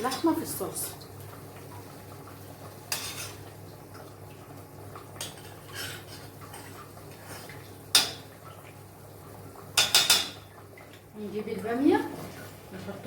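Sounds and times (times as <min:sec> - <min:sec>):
metal utensil scraping a pot: 0:02.9 - 0:03.4, 0:05.4 - 0:07.5.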